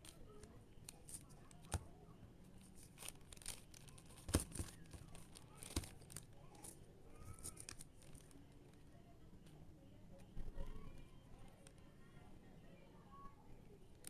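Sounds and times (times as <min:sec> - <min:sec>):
puzzle cube clicking and rattling: 0:02.6 - 0:08.4.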